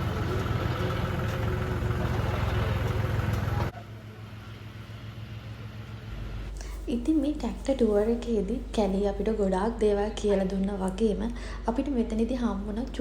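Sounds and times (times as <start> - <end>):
tractor engine idling: 0.0 - 6.5
low hum: 0.0 - 6.6.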